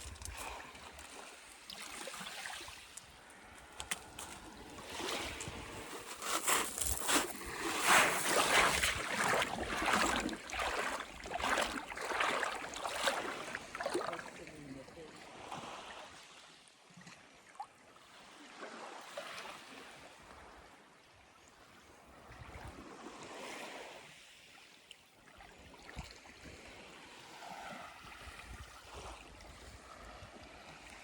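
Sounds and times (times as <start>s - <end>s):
calm sea waves washing on shore: 0.0s - 16.7s, 17.9s - 31.0s.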